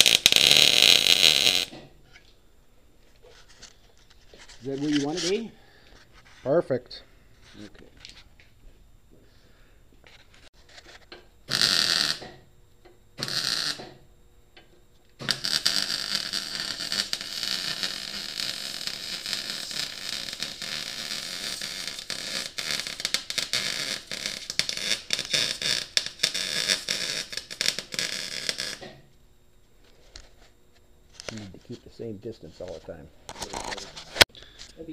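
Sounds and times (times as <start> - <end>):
welder crackling and popping: 0.0 - 1.9, 11.1 - 12.4, 13.2 - 14.0, 15.2 - 29.2.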